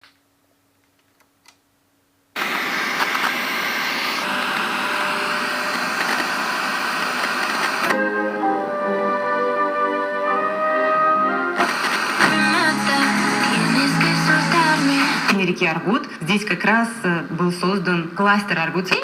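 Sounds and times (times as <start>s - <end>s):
music from radio: 11.4s - 15.4s
radio static hiss: 11.6s - 15.7s.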